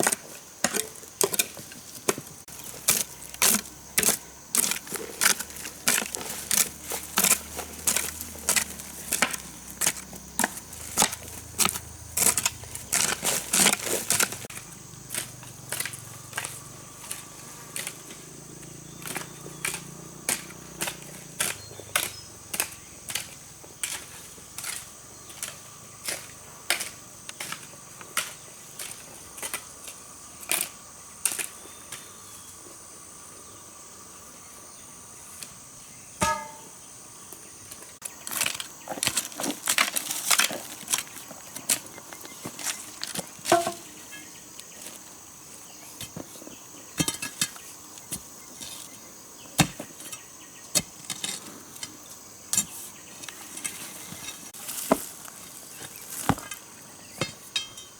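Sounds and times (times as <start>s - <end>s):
hand tool striking: 0.0s - 18.1s, 19.0s - 27.6s, 36.2s - 36.8s, 43.4s - 44.0s, 56.2s - 57.9s
high insect drone: 0.0s - 57.9s.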